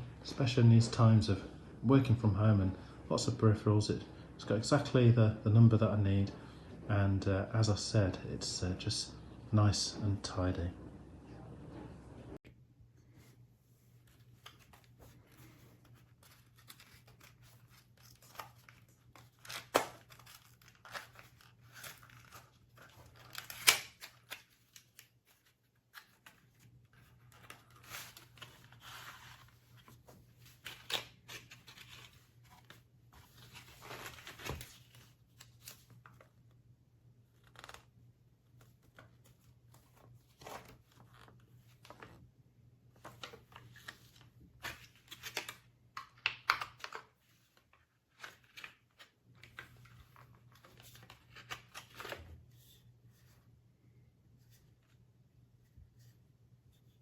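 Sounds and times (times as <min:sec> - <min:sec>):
faint low hum: 0:00.0 - 0:45.8
rustling and tearing: 0:14.0 - 0:36.3.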